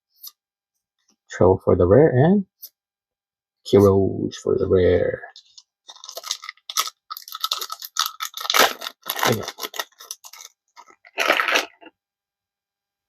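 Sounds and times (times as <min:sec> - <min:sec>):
foil wrapper crinkling and tearing: 0:05.4 - 0:11.9.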